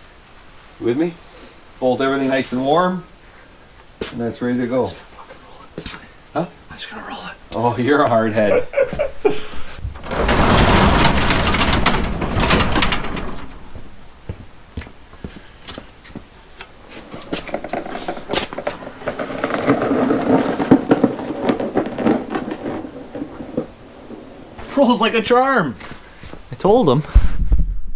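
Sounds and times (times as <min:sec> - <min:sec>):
dolly wheels rattling on floor: 0:08.1 - 0:14.3
clicks and knocks: 0:09.8 - 0:14.4.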